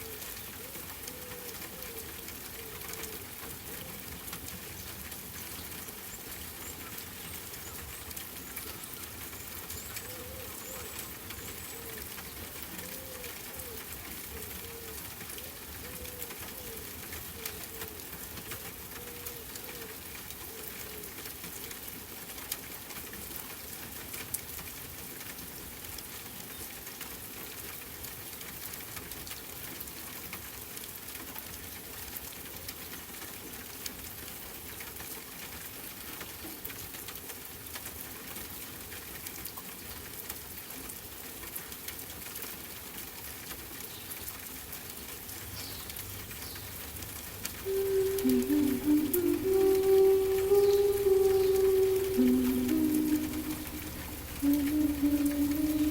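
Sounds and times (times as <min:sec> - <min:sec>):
dove cooing: 0:00.0 - 0:03.2, 0:10.0 - 0:12.1, 0:12.8 - 0:18.0, 0:47.1 - 0:55.9
rain pattering: 0:00.0 - 0:55.9.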